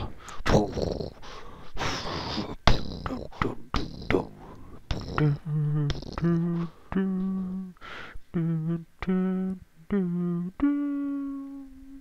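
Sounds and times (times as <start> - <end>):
man humming a melody: 0.0 - 1.3, 2.3 - 12.0
quick breath: 7.8 - 8.2.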